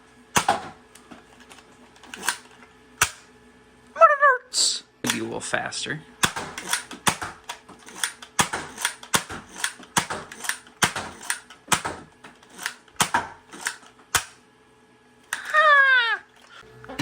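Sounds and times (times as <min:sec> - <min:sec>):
toy blaster clacks firing: 0:06.2 - 0:14.4.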